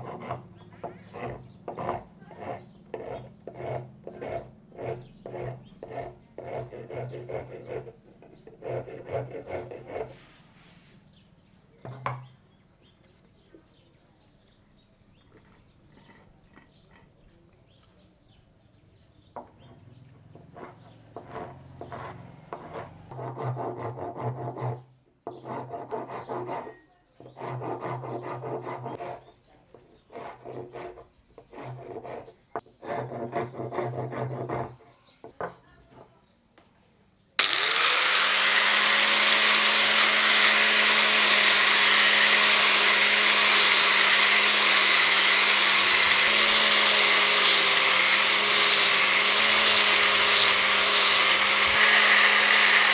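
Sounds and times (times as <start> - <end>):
hand tool working wood: 0.0 - 10.3, 20.4 - 29.3, 37.4 - 52.9
electric power tool running: 37.4 - 52.9.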